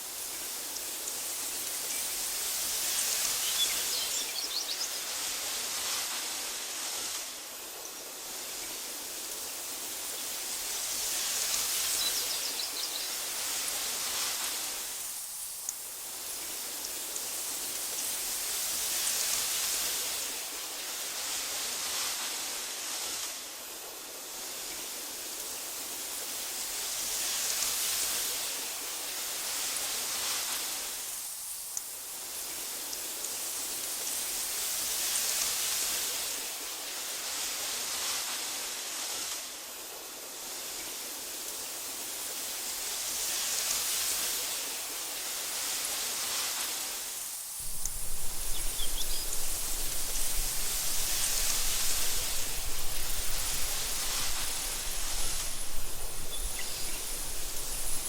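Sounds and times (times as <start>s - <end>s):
wind through tall grass: 0.0s - 58.0s
faint high chirps: 47.7s - 58.0s.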